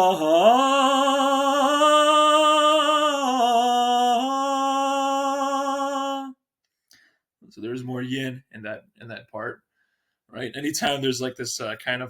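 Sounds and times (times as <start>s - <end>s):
man singing a long wordless note: 0.0s - 6.4s.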